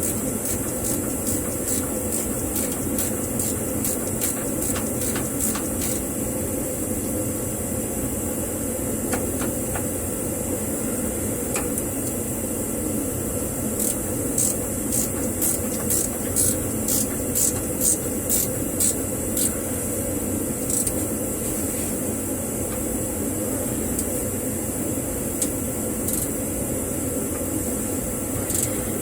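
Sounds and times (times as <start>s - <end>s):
ratchet wrench clicking: 0.0s - 6.1s, 13.8s - 19.6s, 20.7s - 21.0s, 26.1s - 26.3s, 28.5s - 28.7s
steady background hum: 0.0s - 29.0s.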